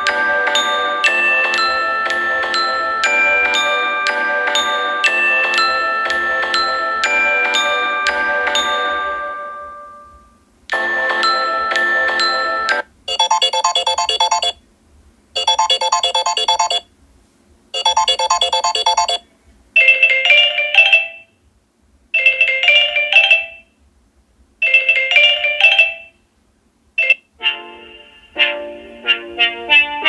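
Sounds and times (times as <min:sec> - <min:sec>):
chiming ringtone motif: 0:00.0 - 0:14.6, 0:15.4 - 0:16.8, 0:17.8 - 0:19.2, 0:19.9 - 0:21.3, 0:22.2 - 0:23.6, 0:24.6 - 0:26.1
pulsing electronic beep ringtone: 0:00.2 - 0:10.1, 0:10.8 - 0:14.6, 0:15.4 - 0:16.8, 0:17.8 - 0:19.2, 0:27.0 - 0:27.3.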